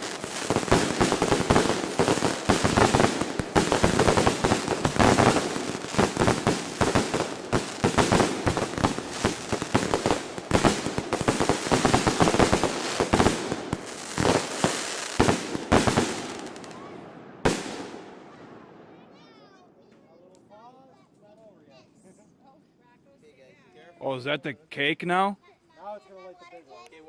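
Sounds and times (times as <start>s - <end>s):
fireworks crackling pops: 0.0s - 19.0s.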